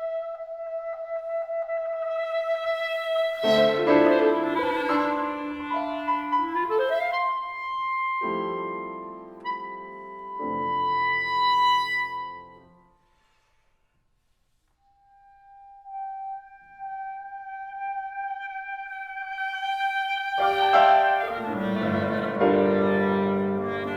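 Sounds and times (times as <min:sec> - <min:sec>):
clarinet playing: 0:00.0 - 0:12.9, 0:14.8 - 0:23.9
piano chords: 0:03.4 - 0:12.8, 0:20.3 - 0:23.9.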